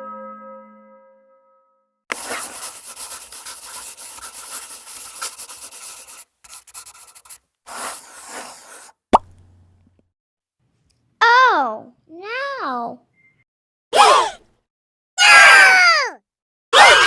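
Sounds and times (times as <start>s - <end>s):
scratchy scraping noise: 2.1s - 9.0s.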